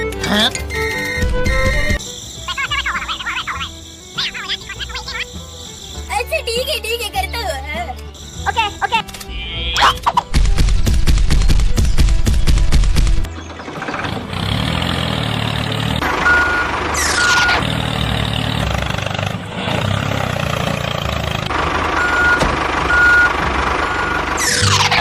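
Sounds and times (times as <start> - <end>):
truck engine running: 0.0 - 25.0
reversing beeps: 16.2 - 17.6, 22.0 - 24.8.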